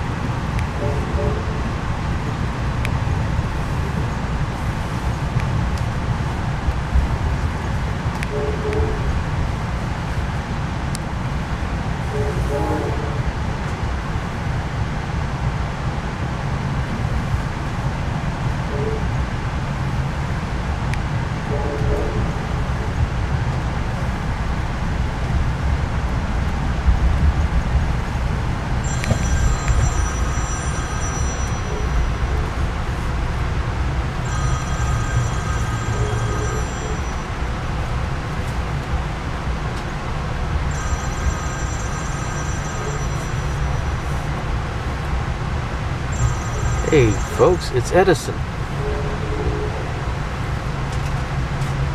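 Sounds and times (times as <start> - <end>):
train rumbling on track: 0.0 - 51.9
thin high-pitched tones: 28.8 - 32.6, 46.1 - 49.0.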